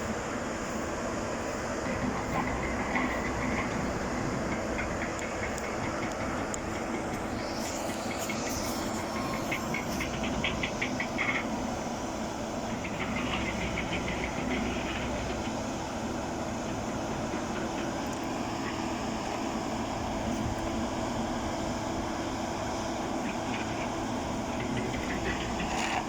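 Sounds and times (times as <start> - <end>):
machinery running: 1.6 - 22.1.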